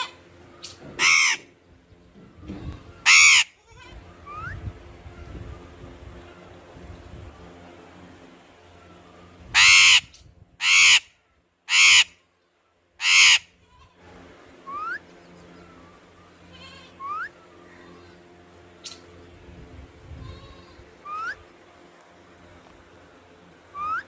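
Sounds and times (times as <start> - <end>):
parrot squawking: 0.0 - 1.5, 3.0 - 4.6, 9.5 - 12.2, 13.0 - 13.6, 21.0 - 21.4, 23.7 - 24.0
parrot whistling: 17.0 - 17.4, 21.0 - 21.4, 23.7 - 24.0.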